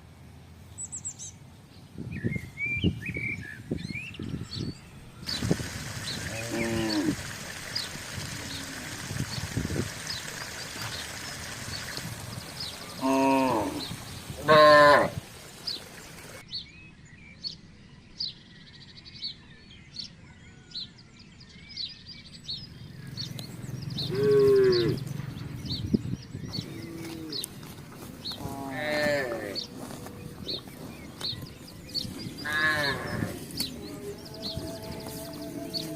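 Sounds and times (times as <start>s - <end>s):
small birds chirping: 0.6s - 35.9s
cattle mooing: 6.2s - 7.3s, 13.0s - 13.8s, 14.4s - 15.2s, 24.0s - 25.1s, 26.7s - 27.5s, 28.4s - 30.2s, 32.4s - 35.9s.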